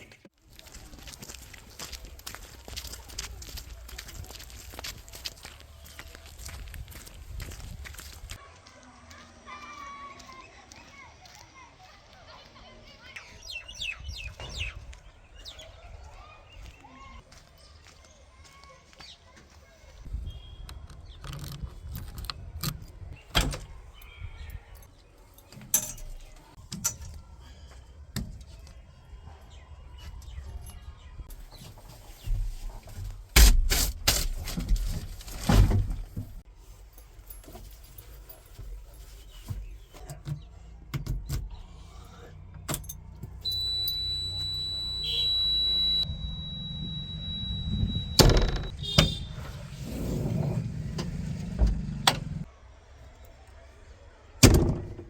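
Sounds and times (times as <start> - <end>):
diesel machinery running: 42.4 - 52.4
high-pitched whine: 43.5 - 48.7
loud thuds: 46.1 - 52.4.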